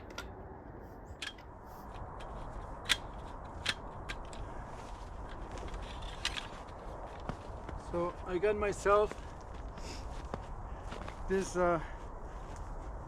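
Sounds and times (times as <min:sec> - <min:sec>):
camping gear clicks: 0:01.1 - 0:07.8.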